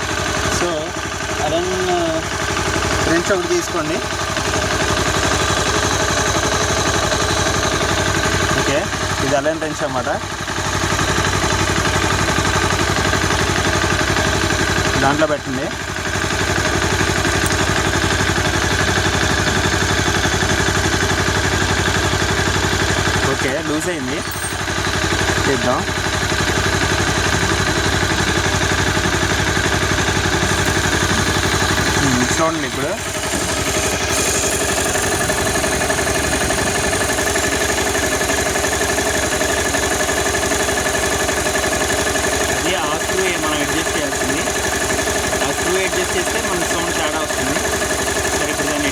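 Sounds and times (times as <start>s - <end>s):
motorcycle engine idling with clatter: 0.0s - 48.9s
cam chain rattle: 30.3s - 37.6s.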